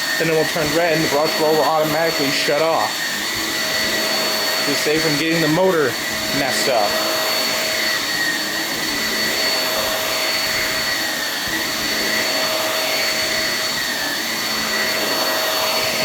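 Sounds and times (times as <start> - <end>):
vacuum cleaner running: 0.0 - 16.0.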